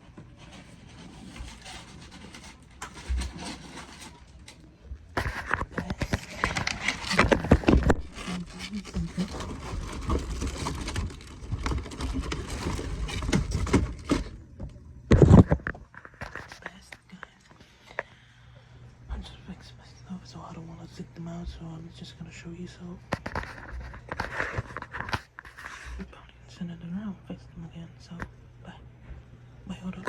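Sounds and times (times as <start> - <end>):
packaging rustling and crackling: 0.2 - 16.7.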